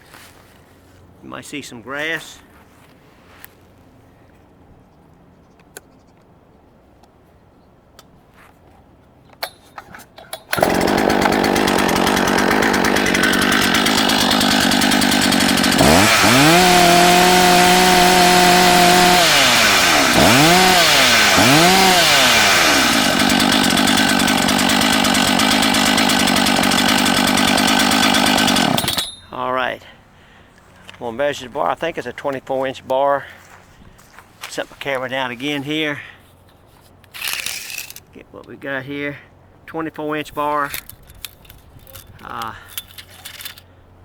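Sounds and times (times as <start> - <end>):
chainsaw starting and revving: 10.2 - 29.1.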